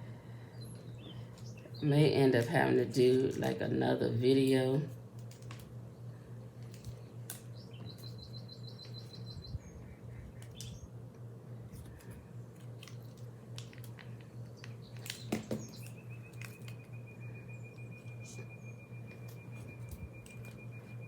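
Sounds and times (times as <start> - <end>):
steady low hum: 0.0 - 21.0
bird singing rapid trills: 7.0 - 11.0, 14.3 - 21.0.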